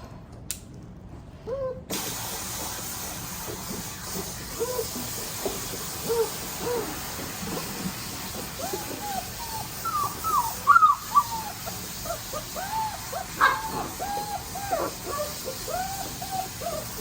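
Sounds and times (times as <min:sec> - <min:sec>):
puppy whining and whimpering: 0:01.4 - 0:01.9, 0:04.5 - 0:05.2, 0:06.0 - 0:07.2, 0:08.3 - 0:17.0.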